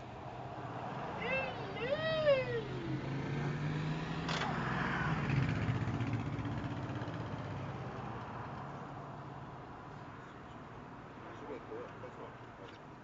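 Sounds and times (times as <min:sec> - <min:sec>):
car engine hum passing by: 0:00.4 - 0:08.7.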